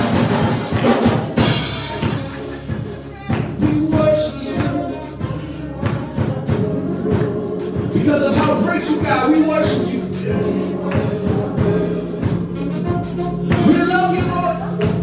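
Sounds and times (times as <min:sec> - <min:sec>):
church music: 0:00.0 - 0:15.0
drum kit beat: 0:00.0 - 0:15.0
held pitched notes: 0:00.0 - 0:15.0.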